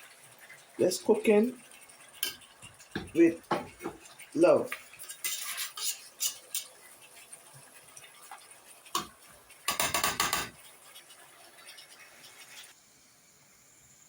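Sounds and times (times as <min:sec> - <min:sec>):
metal utensils and pots clinking: 0:01.2 - 0:10.7.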